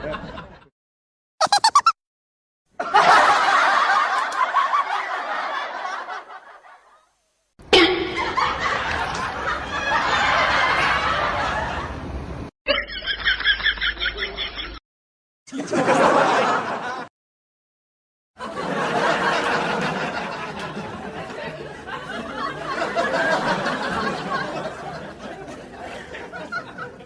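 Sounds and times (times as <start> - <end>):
people laughing: 0.0 - 0.7, 2.8 - 6.9, 8.0 - 12.0, 12.7 - 14.8, 15.5 - 17.1, 18.4 - 27.0.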